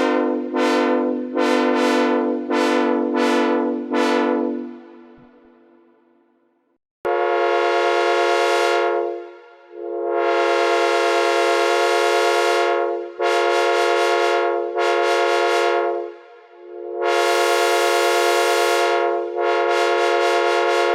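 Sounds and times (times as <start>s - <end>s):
synthesized train horn blasts: 0.0s - 6.2s, 7.0s - 20.9s.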